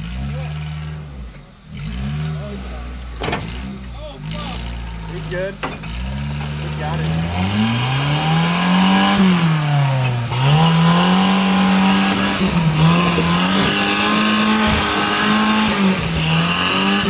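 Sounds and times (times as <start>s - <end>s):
car engine revving hard: 0.0s - 17.0s.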